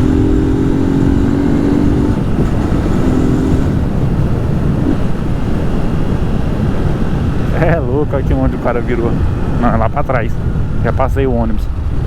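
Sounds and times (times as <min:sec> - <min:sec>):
motorcycle engine running: 0:00.0 - 0:09.6
wind rushing over microphone: 0:00.0 - 0:12.0.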